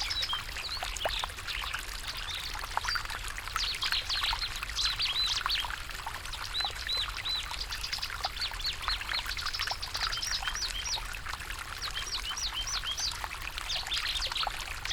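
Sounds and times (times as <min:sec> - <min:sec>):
small birds chirping: 0:00.0 - 0:01.2
stream flowing: 0:00.0 - 0:14.9.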